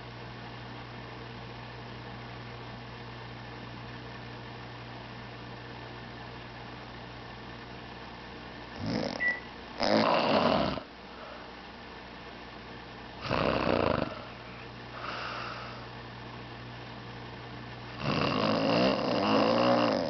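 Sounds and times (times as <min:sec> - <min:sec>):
steady low hum: 0:00.0 - 0:20.0
woman snoring: 0:08.8 - 0:10.9, 0:13.2 - 0:14.4, 0:18.0 - 0:20.0
soft breathing: 0:14.1 - 0:16.0.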